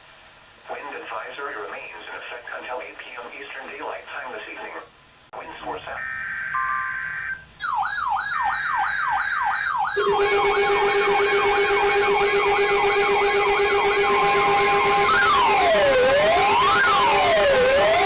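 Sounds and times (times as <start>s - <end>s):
steady higher alarm tones: 6.0s - 18.0s
pulsing low alarm tone: 7.6s - 18.0s
rapid falling siren wail: 7.7s - 18.0s.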